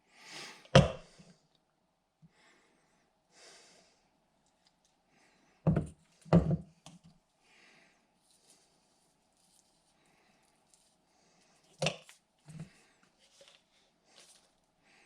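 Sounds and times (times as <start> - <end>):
soft rustle: 8.1 - 14.8.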